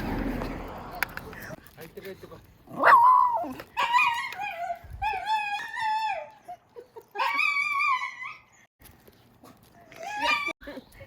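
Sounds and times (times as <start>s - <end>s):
dog whine-howling: 9.9s - 10.6s.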